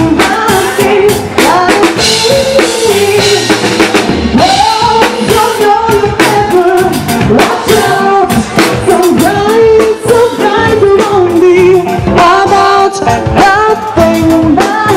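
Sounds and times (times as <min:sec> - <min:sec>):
drum kit: 0:00.0 - 0:14.9
guitar: 0:00.0 - 0:14.9
lead vocal singing: 0:00.0 - 0:14.9.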